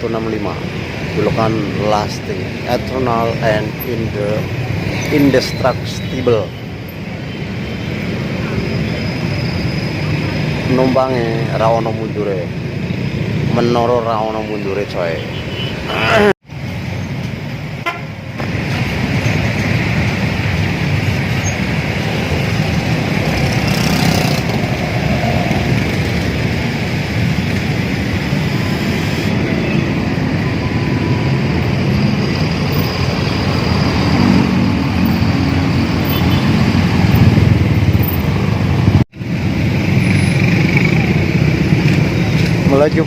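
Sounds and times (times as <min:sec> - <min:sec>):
buses passing: 0:00.0 - 0:43.0
motorcycles passing: 0:00.0 - 0:43.0
road traffic: 0:00.0 - 0:43.0.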